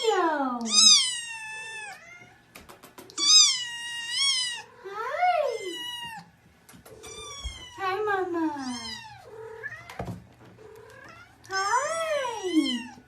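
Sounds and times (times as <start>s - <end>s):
kitten meowing: 0.6s - 2.3s, 3.1s - 4.7s, 5.4s - 6.3s, 6.9s - 7.9s, 8.5s - 10.0s
faint clicks: 2.5s - 3.2s.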